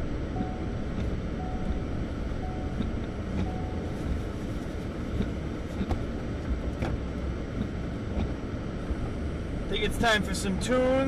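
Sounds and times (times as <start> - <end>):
car engine and tyres rumbling: 0.0 - 11.0
short beeps: 0.3 - 4.0.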